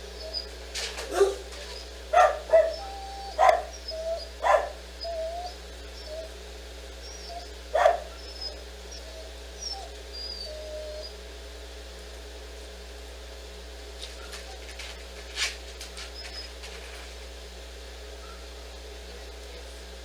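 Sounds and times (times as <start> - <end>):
dog barking: 1.0 - 4.8, 7.7 - 8.6, 18.2 - 18.6.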